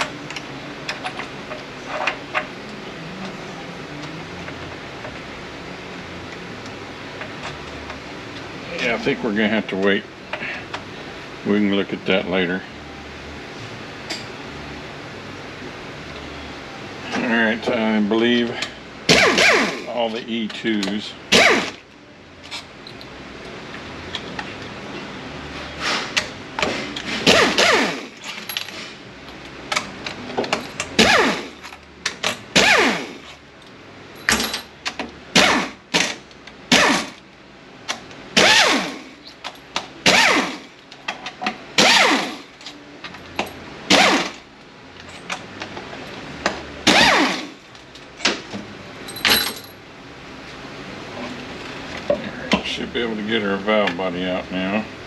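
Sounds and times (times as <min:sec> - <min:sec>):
power tool running in bursts: 0:26.8 - 0:28.2, 0:31.0 - 0:31.6, 0:32.6 - 0:33.2, 0:38.4 - 0:39.1, 0:40.0 - 0:40.7, 0:41.8 - 0:42.5, 0:43.9 - 0:44.4, 0:46.8 - 0:47.6.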